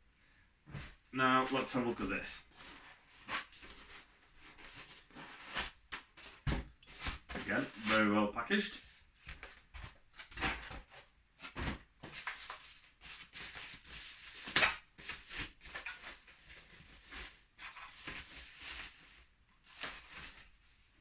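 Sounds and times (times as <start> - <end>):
packaging rustling and scraping: 2.4 - 8.1.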